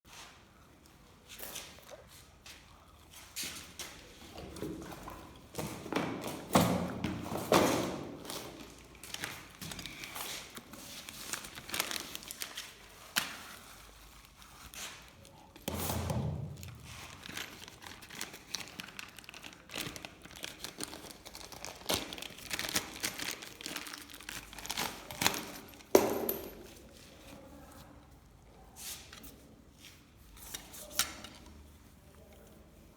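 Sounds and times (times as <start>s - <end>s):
handling clicks and crinkling: 3.7s - 15.7s, 16.6s - 28.1s.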